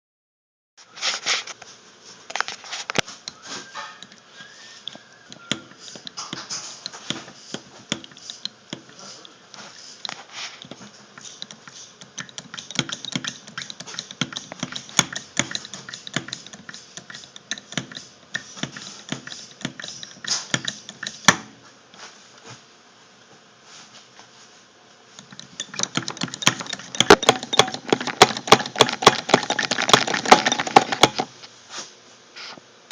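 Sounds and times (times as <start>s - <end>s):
fuel injector spitting and clicking: 4.8s - 9.0s, 10.0s - 21.4s, 25.2s - 31.3s.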